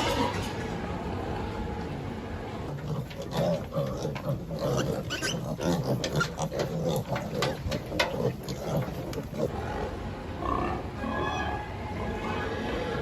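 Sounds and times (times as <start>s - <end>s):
pigs grunting: 2.7s - 13.0s
pigs squealing: 2.7s - 13.0s
sharp knocks and clatters: 5.9s - 9.0s.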